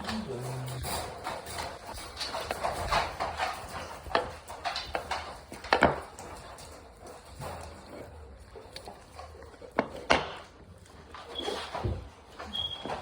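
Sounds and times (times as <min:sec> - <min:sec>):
puppy gnawing a bone: 0:01.0 - 0:13.0.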